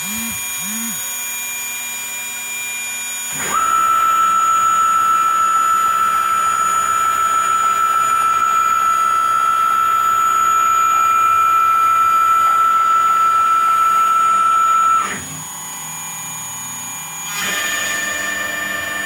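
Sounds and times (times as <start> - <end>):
router spindle high-pitched whine: 0.0 - 19.0.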